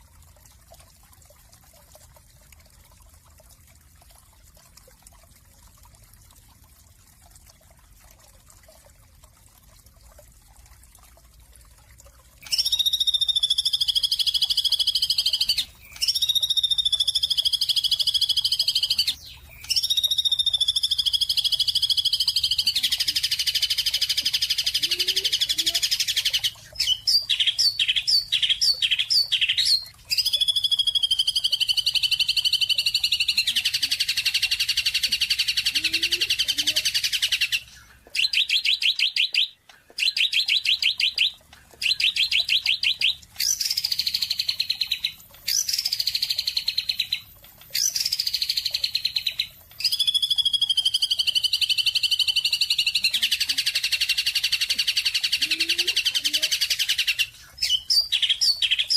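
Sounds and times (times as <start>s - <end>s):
songbird trilling: 12.4s - 58.9s.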